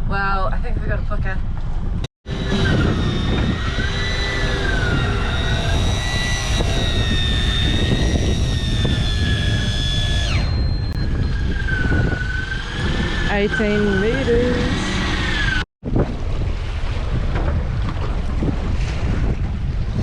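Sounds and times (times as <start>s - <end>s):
wind and sea rumble: 0.0s - 20.0s
electric fishing reel motor whining: 2.3s - 15.7s.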